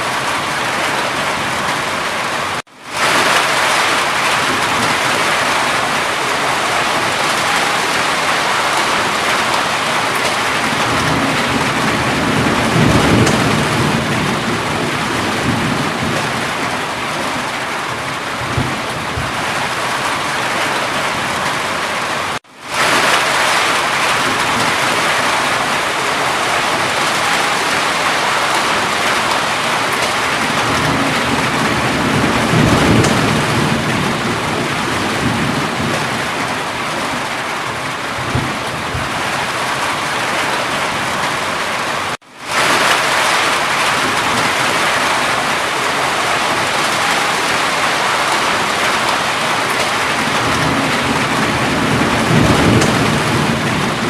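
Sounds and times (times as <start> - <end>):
heavy rain: 0.0 - 54.0
low thunder rumbling: 3.0 - 21.7, 22.8 - 41.1, 42.5 - 54.0.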